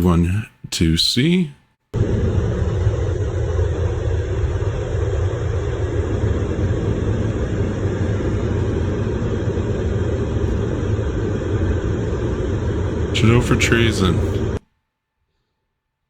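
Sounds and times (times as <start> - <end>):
motor vehicle engine rumble: 2.0 - 14.6.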